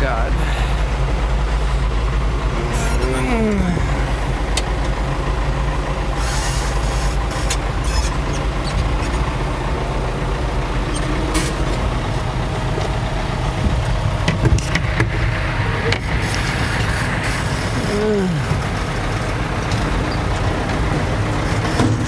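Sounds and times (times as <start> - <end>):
tractor engine running: 0.0 - 22.0
sharp clicks and knocks: 6.6 - 9.4, 13.6 - 15.2, 15.9 - 22.0.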